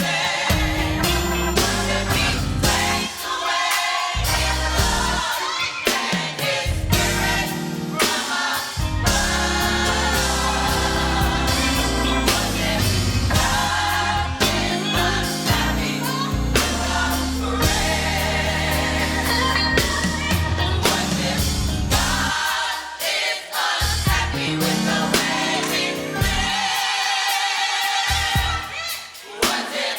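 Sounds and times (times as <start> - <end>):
gospel choir singing: 0.0 - 29.9
bass line and beat: 0.5 - 3.1, 4.2 - 5.3, 6.7 - 7.5, 8.8 - 22.4, 23.8 - 24.6.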